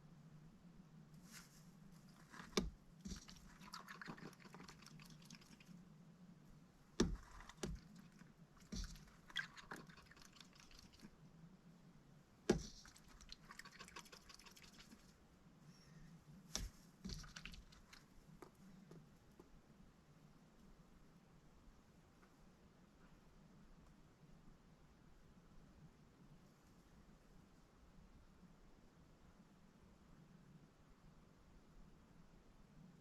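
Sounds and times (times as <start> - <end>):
rustling: 1.1 - 5.9, 6.5 - 11.2, 12.4 - 15.2, 15.8 - 19.3.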